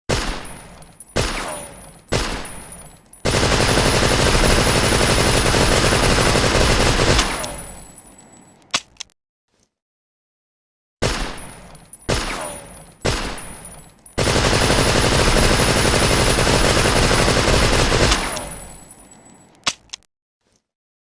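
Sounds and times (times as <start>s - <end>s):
rapid automatic gunfire: 2.1s - 2.6s, 3.2s - 7.4s, 14.2s - 18.7s.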